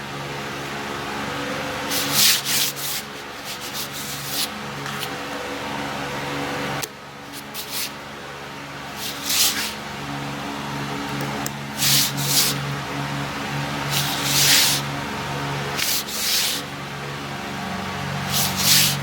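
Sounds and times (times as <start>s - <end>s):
steady low hum: 0.0s - 19.0s
scraping rubs on tire tread: 1.8s - 5.2s, 7.2s - 8.1s, 8.9s - 9.9s, 11.7s - 12.7s, 13.8s - 15.0s, 15.7s - 16.8s, 18.1s - 19.0s.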